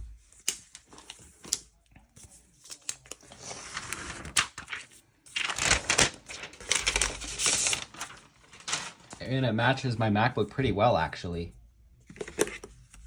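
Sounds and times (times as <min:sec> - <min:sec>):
packaging rustling and tearing: 0:05.4 - 0:09.2.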